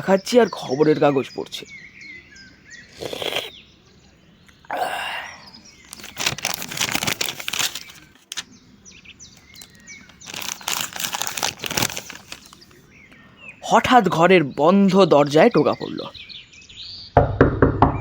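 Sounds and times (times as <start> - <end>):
birds chirping: 0.0 - 18.0
paper rustling: 5.8 - 8.5, 9.4 - 12.8.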